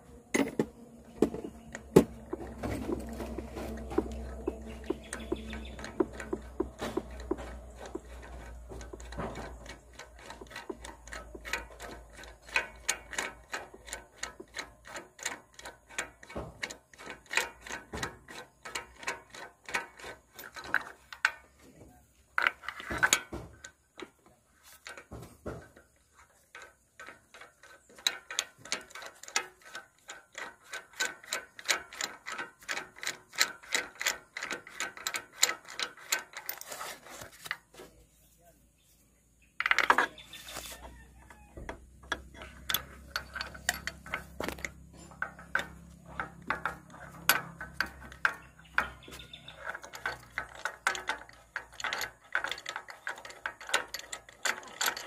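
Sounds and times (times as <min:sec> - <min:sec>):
ratchet wrench clicking: 0:42.0 - 0:55.0.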